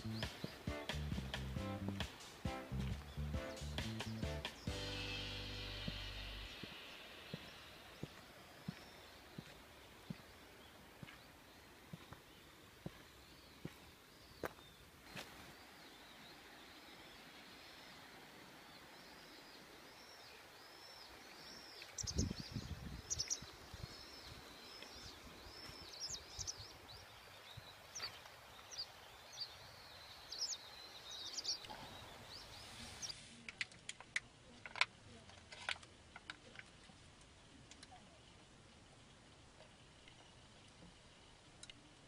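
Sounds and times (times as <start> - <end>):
low thumps: 0.0 - 7.5
bird chirping: 0.0 - 33.2
outdoor hiss: 0.0 - 33.9.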